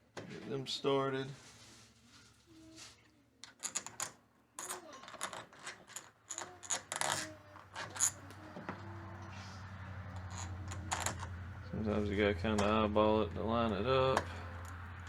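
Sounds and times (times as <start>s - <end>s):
screws clicking and clinking: 3.4s - 8.3s, 10.1s - 11.3s.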